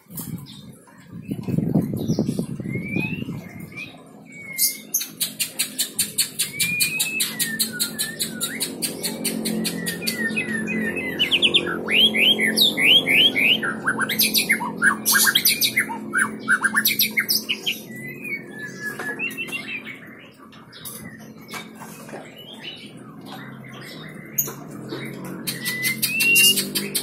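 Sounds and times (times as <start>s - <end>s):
bird singing whistles: 2.6s - 5.0s, 6.3s - 20.0s, 25.4s - 27.0s.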